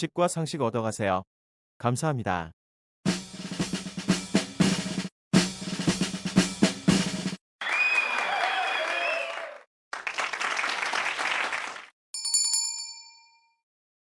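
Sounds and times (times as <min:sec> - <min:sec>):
applause-like noise: 0:07.6 - 0:11.9
bell ding: 0:12.2 - 0:13.6.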